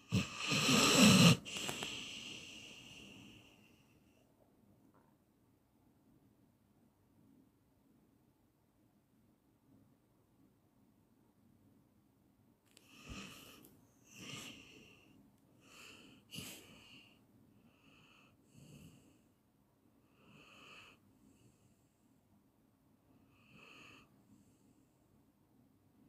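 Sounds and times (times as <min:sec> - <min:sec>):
dog snoring with high whistle: 0:00.0 - 0:03.4.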